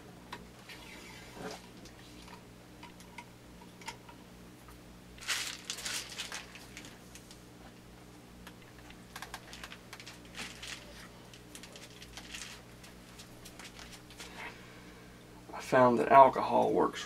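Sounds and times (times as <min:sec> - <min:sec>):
steady low hum: 0:00.0 - 0:17.0
scraping rustle: 0:05.2 - 0:07.3, 0:09.5 - 0:14.4.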